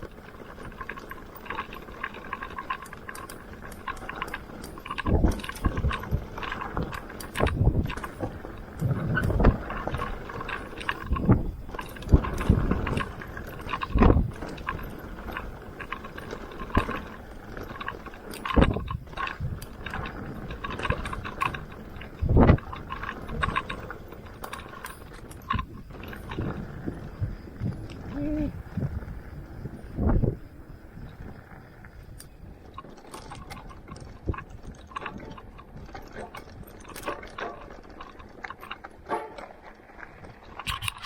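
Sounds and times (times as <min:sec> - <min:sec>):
bike rattling: 0:00.0 - 0:41.0
bike tyres rolling on dirt: 0:00.0 - 0:41.0
hard thumps over bumps: 0:00.6 - 0:30.5.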